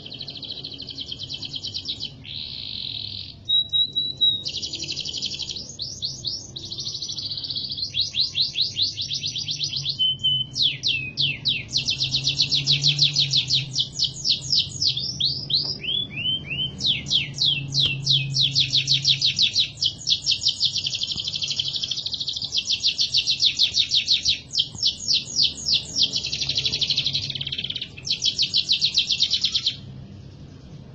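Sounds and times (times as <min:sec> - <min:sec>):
canary singing trills: 0:00.0 - 0:30.9.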